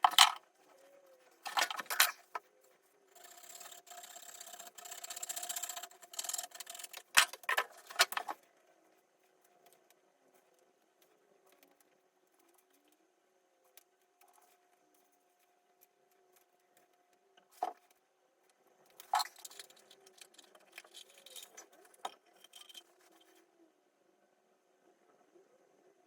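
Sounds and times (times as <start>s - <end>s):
small hard parts clinking: 0.0s - 0.4s, 1.4s - 2.4s, 3.1s - 8.4s, 18.9s - 23.4s.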